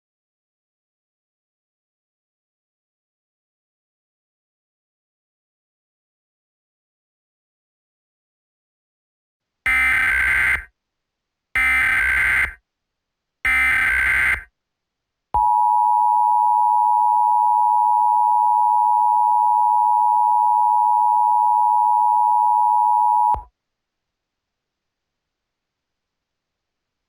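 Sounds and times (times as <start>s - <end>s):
two-tone attention signal: 15.4s - 23.4s.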